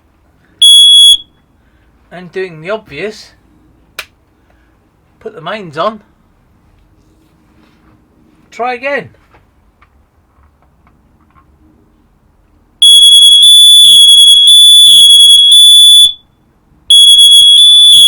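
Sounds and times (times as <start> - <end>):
shrill smoke alarm tone: 0.6 - 1.4, 12.8 - 16.3, 16.9 - 18.0.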